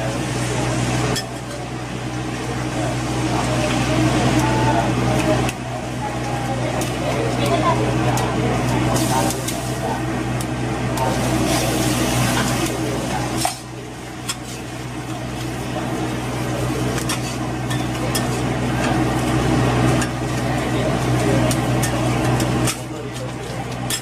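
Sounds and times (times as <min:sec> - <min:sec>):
food sizzling in a pan: 0:08.9 - 0:10.1, 0:11.0 - 0:20.4.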